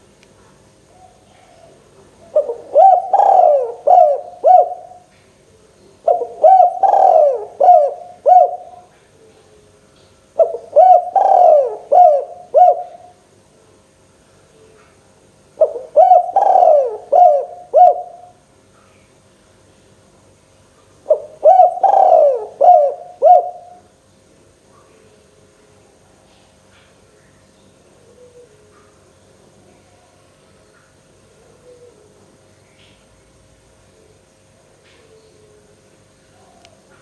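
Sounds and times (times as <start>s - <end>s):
dove cooing: 0.9s - 5.1s, 6.0s - 9.8s, 10.4s - 13.2s, 15.6s - 18.4s, 21.1s - 23.9s, 28.0s - 28.9s, 31.2s - 32.3s.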